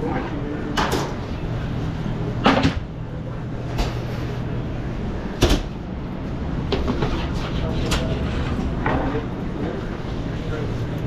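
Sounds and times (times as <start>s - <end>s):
kitchen equipment hum: 0.0s - 11.0s.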